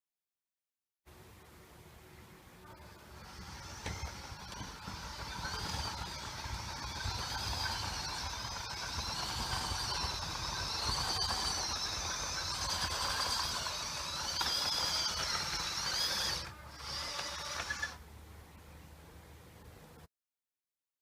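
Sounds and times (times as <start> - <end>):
small electric motors whining: 2.6 - 18.0.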